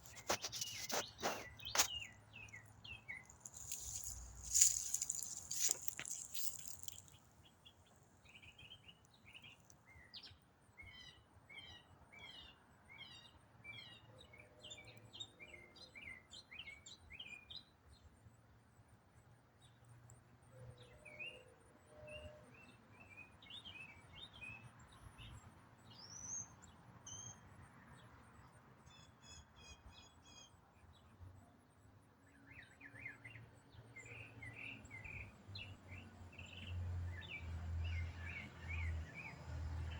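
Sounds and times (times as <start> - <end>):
songbird singing: 0.0 - 18.0, 19.6 - 28.2, 28.8 - 39.9.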